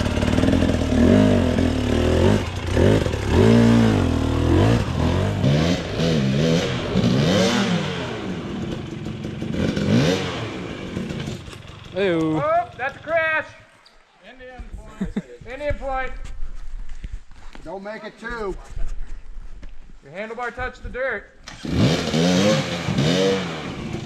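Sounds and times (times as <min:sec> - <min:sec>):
dirt bike engine revving: 0:00.0 - 0:13.1, 0:21.5 - 0:24.0.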